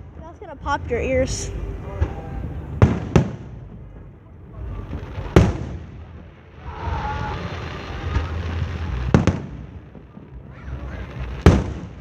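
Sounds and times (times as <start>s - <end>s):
firework booms: 1.8s - 12.0s
firework hiss: 4.6s - 12.0s.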